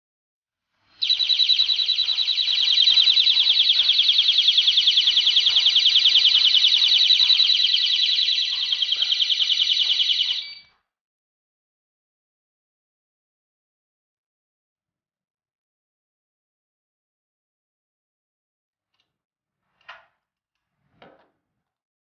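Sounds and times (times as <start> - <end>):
warbling alarm siren: 0.9 - 10.7.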